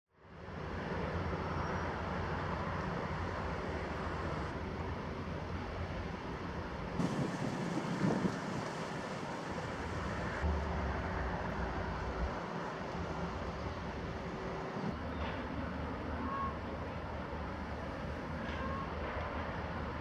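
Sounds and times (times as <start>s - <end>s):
rush of outdoor noise: 0.1s - 20.0s
boat engine rumble: 0.4s - 20.0s
wind gusts on microphone: 7.0s - 10.5s.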